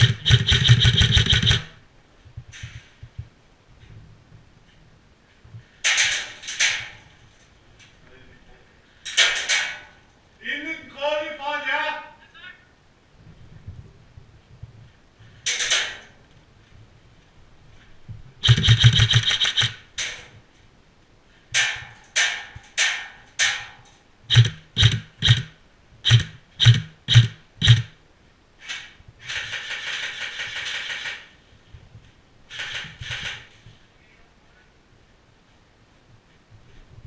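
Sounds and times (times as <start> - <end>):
airsoft gun full-auto bursts: 0.0 - 1.8, 18.4 - 19.9, 24.3 - 28.0, 29.4 - 31.3
airsoft gun single shots: 0.0 - 1.8, 18.4 - 20.2.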